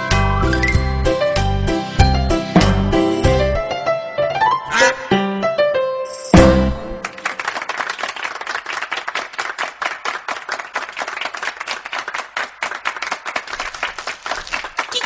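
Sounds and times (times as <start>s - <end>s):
group of people clapping: 6.9s - 15.0s.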